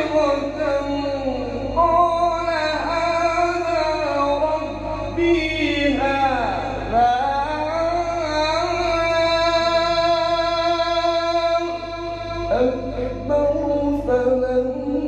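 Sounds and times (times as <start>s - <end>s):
man chanting recitation: 0.0s - 15.0s.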